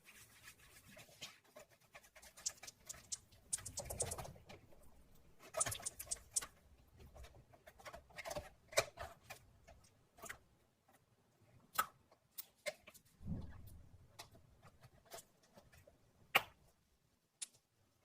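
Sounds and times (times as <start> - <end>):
sharp clicks and crackles: 2.2 - 4.6, 5.5 - 6.6.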